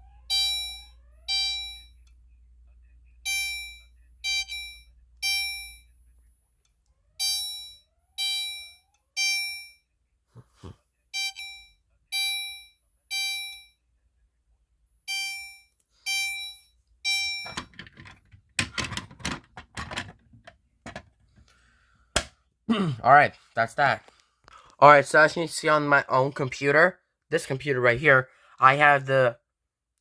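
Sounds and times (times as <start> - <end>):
fire alarm chimes: 0.2 - 2.1, 3.2 - 6.1, 7.2 - 9.9, 11.1 - 13.8, 15.1 - 17.7
irregular knocks and rattles: 17.5 - 21.2.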